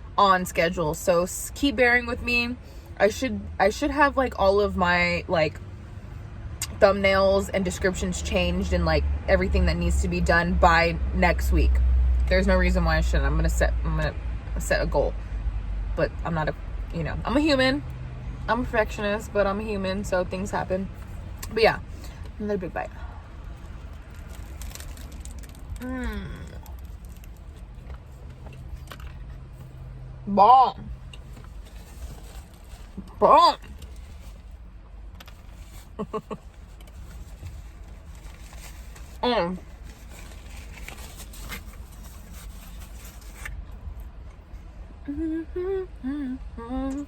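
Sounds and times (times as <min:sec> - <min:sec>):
closed-mouth hum falling in pitch: 0:45.0 - 0:47.0.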